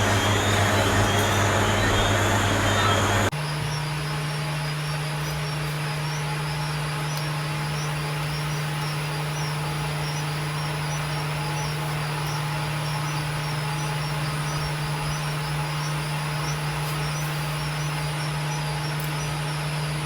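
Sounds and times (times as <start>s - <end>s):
low mechanical hum with hiss: 0.0s - 20.0s.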